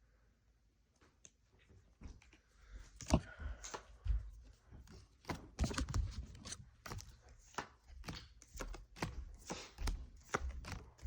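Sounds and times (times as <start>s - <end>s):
cards and packaging clicking: 4.9s - 11.0s.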